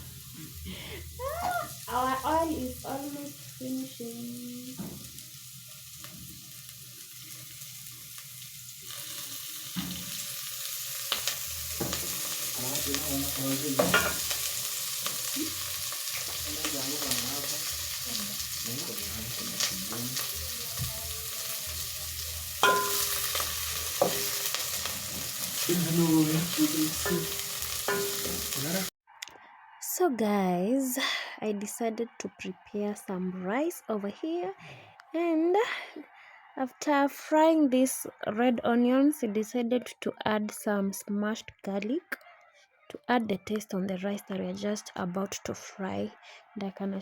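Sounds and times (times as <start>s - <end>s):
onions sizzling in oil: 0.0s - 28.9s
spoon knocking against pot: 22.6s - 23.2s, 27.1s - 28.4s.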